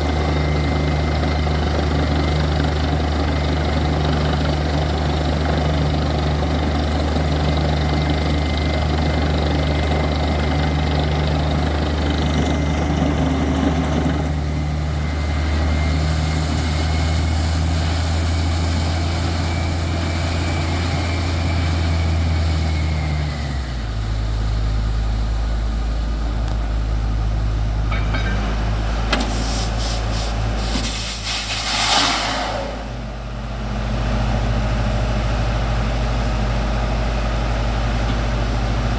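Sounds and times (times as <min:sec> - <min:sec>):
drilling rig engine running: 0:00.0 - 0:38.9
brief rush of noise: 0:29.3 - 0:33.2.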